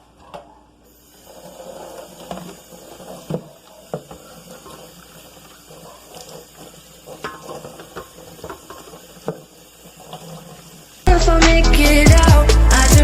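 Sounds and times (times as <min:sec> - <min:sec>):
water running from tap into sink: 0:02.2 - 0:11.0.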